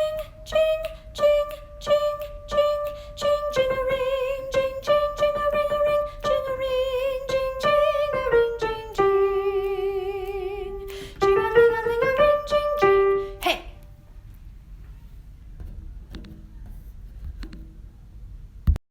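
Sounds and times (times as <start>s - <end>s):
soprano voice singing: 0.0s - 13.8s
piano: 0.0s - 14.3s.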